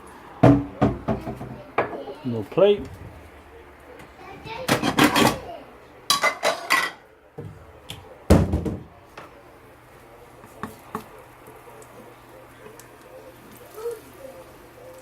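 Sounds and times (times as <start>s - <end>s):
dishes clattering: 4.6s - 5.5s, 6.1s - 7.1s.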